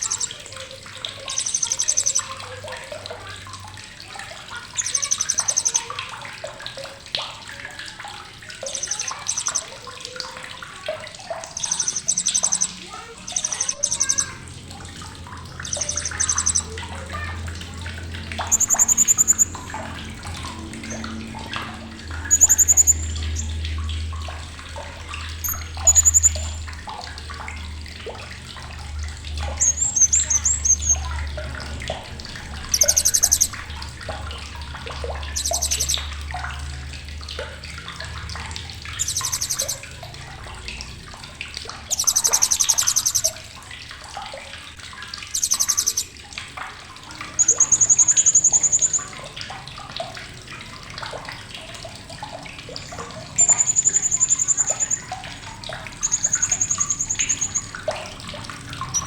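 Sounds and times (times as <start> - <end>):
parrot shrill calls: 11.5 - 14.4, 15.6 - 16.7, 18.4 - 19.7, 39.0 - 39.8, 41.9 - 43.3, 45.3 - 46.1.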